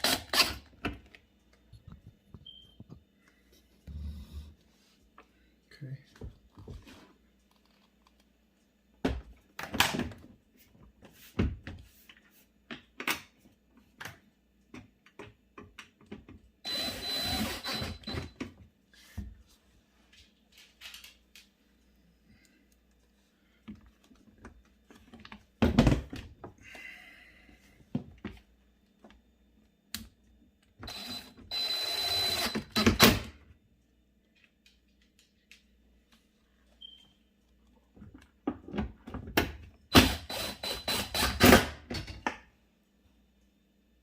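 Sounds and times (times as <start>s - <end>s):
cordless drill driving screw: 0.0s - 0.7s, 16.7s - 18.3s, 30.9s - 33.0s, 39.9s - 41.7s.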